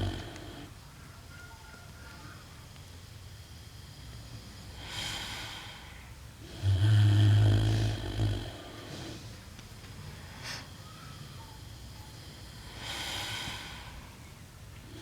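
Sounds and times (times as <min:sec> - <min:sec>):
pig snoring: 0:00.0 - 0:00.7, 0:06.4 - 0:09.2
pig breathing hiss: 0:03.3 - 0:09.4, 0:11.7 - 0:14.2.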